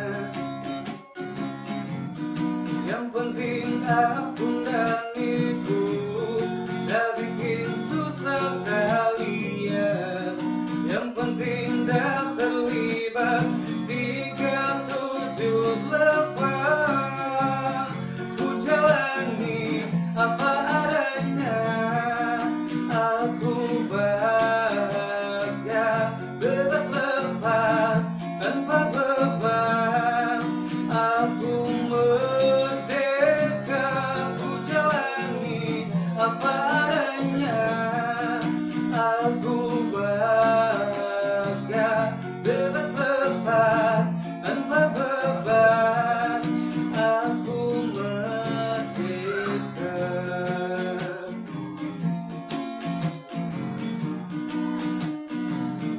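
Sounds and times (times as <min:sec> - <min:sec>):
man singing: 0:00.0 - 0:01.0, 0:02.7 - 0:52.0
guitar playing chords: 0:00.0 - 0:55.9.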